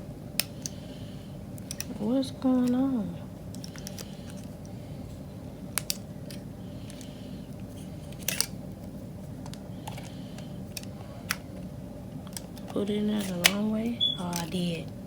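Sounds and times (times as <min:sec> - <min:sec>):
steady low hum: 0:00.0 - 0:15.0
small plastic clicks: 0:01.6 - 0:02.0, 0:05.8 - 0:07.1.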